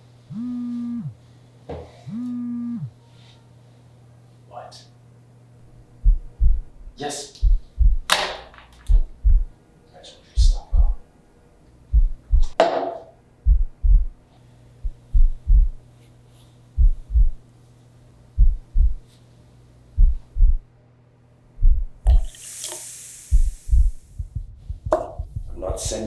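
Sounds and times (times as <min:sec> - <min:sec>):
steady low hum: 0:00.0 - 0:26.0
heartbeat thumps: 0:00.3 - 0:01.2, 0:02.1 - 0:02.9, 0:05.6 - 0:08.3, 0:08.9 - 0:09.6, 0:10.4 - 0:11.1, 0:11.8 - 0:12.6, 0:13.4 - 0:16.0, 0:16.7 - 0:17.4, 0:18.3 - 0:19.1, 0:19.9 - 0:20.7, 0:21.5 - 0:22.4, 0:23.3 - 0:26.0
rushing hiss: 0:22.2 - 0:24.1.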